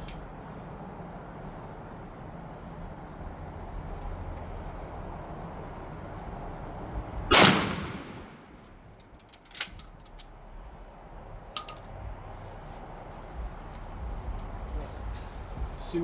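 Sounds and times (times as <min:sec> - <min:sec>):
shotgun blast: 0:07.3 - 0:08.6.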